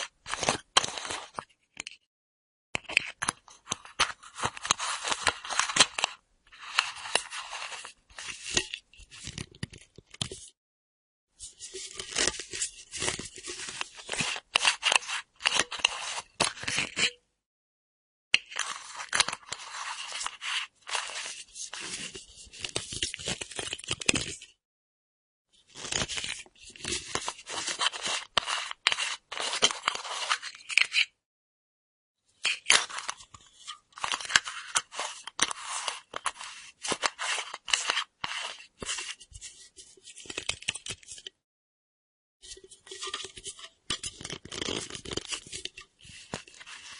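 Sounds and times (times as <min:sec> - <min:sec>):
metal screw cap scraping and clicking: 0:11.7 - 0:17.2, 0:28.0 - 0:31.1, 0:42.4 - 0:46.9.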